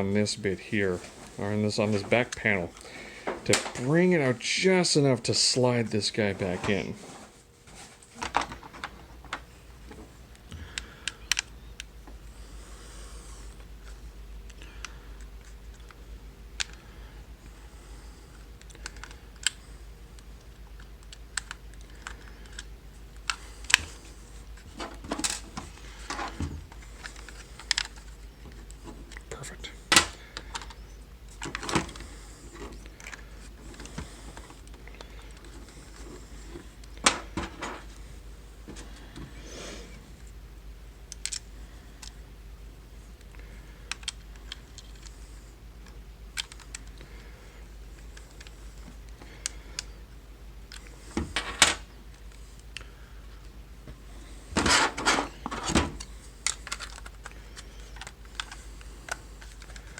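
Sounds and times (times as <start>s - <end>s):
plastic controller clicks and scrapes: 54.6s - 59.9s.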